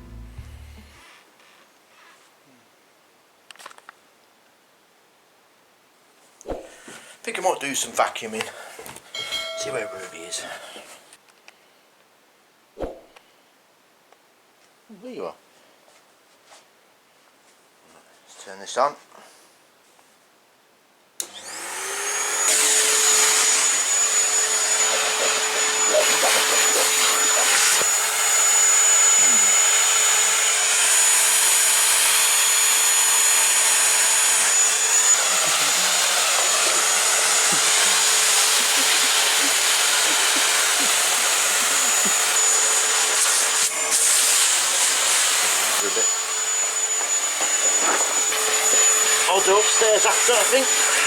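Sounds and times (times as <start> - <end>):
vacuum cleaner motor whine: 21.2 - 51.0.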